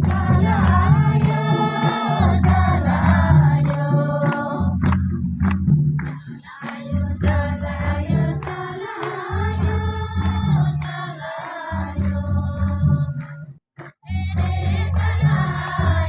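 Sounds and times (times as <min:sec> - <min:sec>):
strong low bass: 0:00.0 - 0:06.1
bright percussion strikes: 0:00.0 - 0:16.0
group of voices singing: 0:00.0 - 0:16.0.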